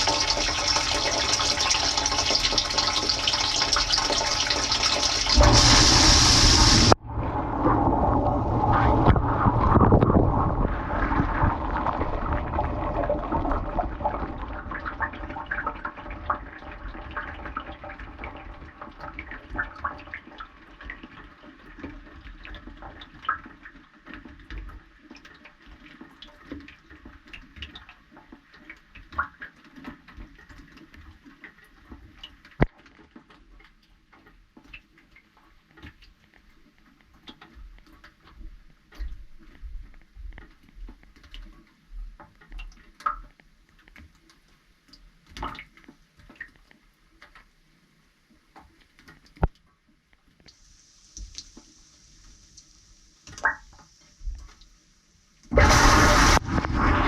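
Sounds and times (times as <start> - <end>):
water rushing inside dishwasher: 0.0 - 15.9, 55.5 - 57.0
water dripping and ticking: 0.0 - 55.5.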